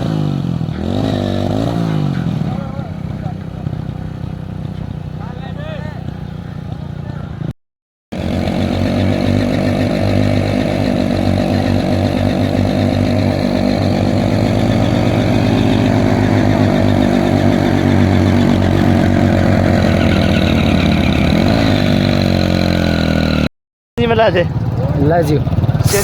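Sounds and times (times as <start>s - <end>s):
engine running steadily: 8.2s - 19.8s.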